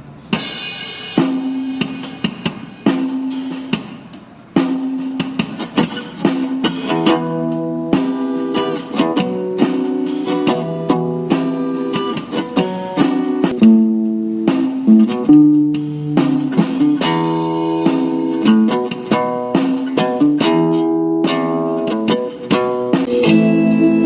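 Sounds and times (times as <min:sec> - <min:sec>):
drums: 0:00.0 - 0:24.0
guitar playing plucked melody: 0:05.5 - 0:24.0.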